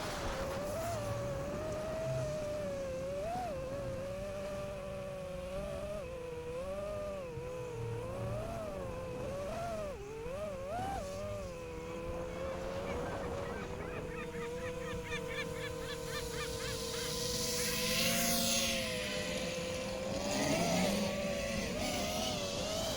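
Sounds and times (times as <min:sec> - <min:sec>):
drone motors whining: 0:00.0 - 0:22.9.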